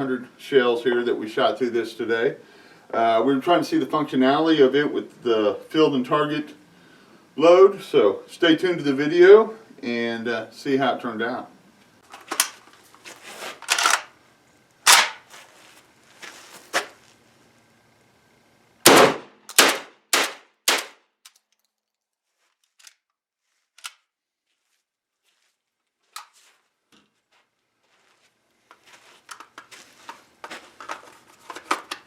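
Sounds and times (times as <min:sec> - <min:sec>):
shotgun shots: 0:18.9 - 0:21.0.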